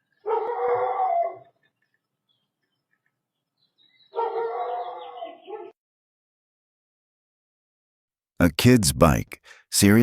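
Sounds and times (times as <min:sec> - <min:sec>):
dog crying: 0:00.2 - 0:01.6, 0:04.2 - 0:05.7.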